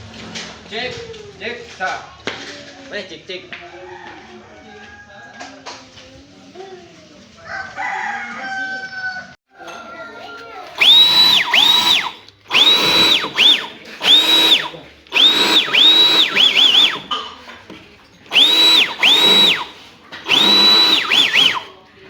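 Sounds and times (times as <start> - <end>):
electric dust blower bursts: 10.8 - 17.1, 18.3 - 21.7.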